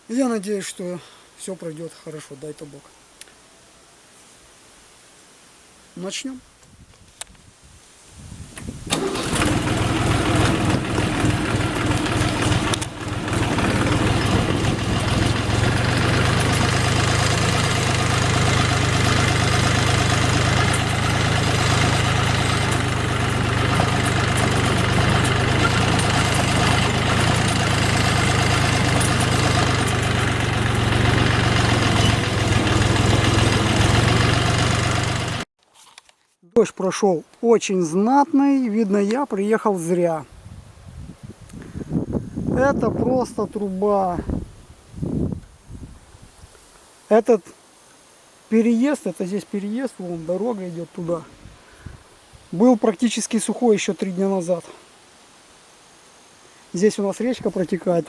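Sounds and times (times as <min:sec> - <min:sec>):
tractor engine running: 0:08.8 - 0:35.5.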